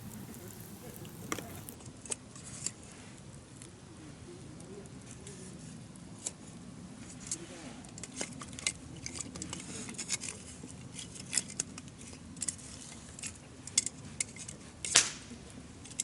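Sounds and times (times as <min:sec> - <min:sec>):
campfire wood crackling: 0:00.0 - 0:01.8.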